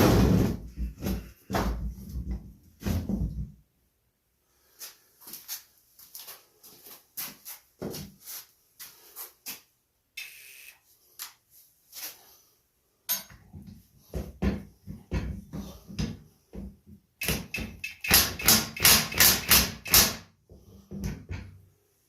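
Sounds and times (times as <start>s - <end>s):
clinks and knocks of metal tools: 13.1s - 13.5s.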